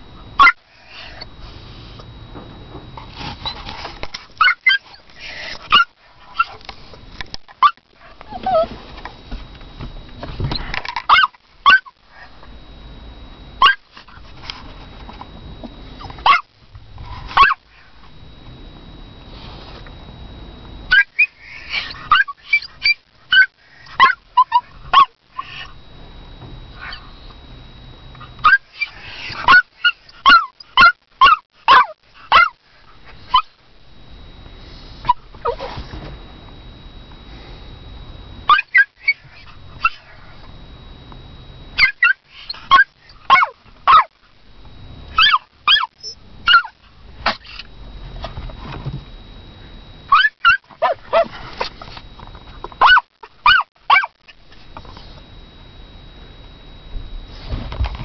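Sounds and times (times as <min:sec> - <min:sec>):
small dog barking: 0:00.4 - 0:00.6, 0:04.4 - 0:05.0, 0:05.7 - 0:06.6, 0:07.6 - 0:08.7, 0:11.1 - 0:12.2, 0:13.6 - 0:13.9, 0:16.2 - 0:16.5, 0:17.3 - 0:17.6, 0:20.9 - 0:25.7, 0:28.4 - 0:32.6, 0:38.5 - 0:40.2, 0:41.8 - 0:44.1, 0:45.1 - 0:47.6, 0:50.1 - 0:51.3, 0:52.8 - 0:54.2.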